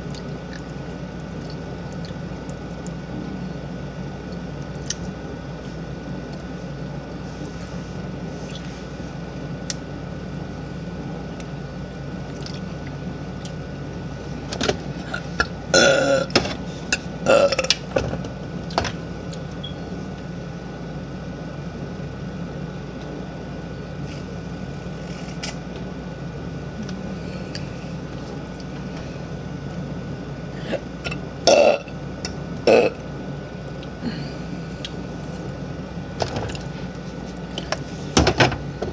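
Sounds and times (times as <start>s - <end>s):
low background hum: 0.0s - 38.9s
woman burping: 15.7s - 16.4s, 17.2s - 17.7s, 31.4s - 31.9s, 32.6s - 33.0s.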